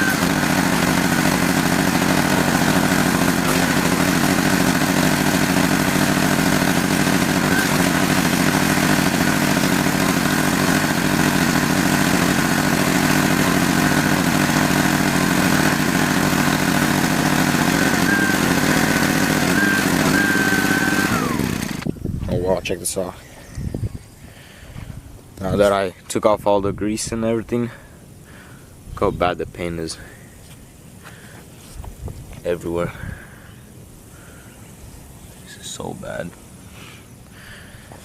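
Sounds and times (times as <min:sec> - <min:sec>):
pressure washer motor running: 0:00.0 - 0:21.9.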